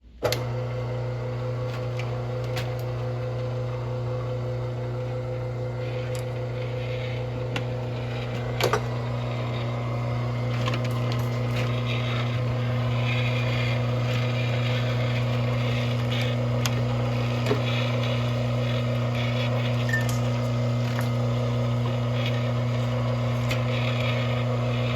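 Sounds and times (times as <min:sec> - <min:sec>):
mechanical hum with hiss: 0:05.5 - 0:24.9.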